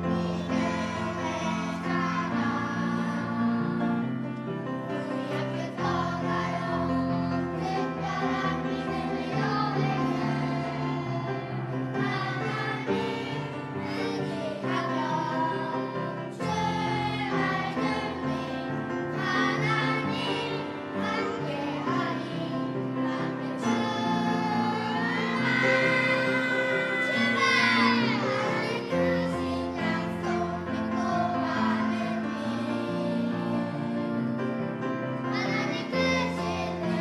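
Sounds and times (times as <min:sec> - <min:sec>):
children's choir singing: 0:00.0 - 0:37.0
instrumental accompaniment: 0:16.5 - 0:37.0.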